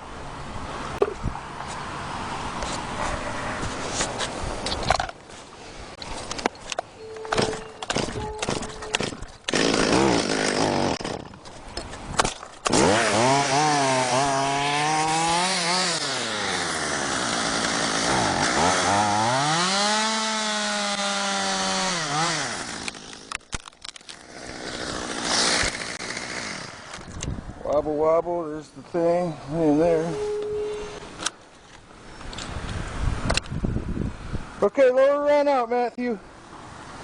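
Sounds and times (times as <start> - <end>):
chainsaw cutting and revving: 8.9 - 11.4, 12.6 - 23.4, 24.1 - 27.0.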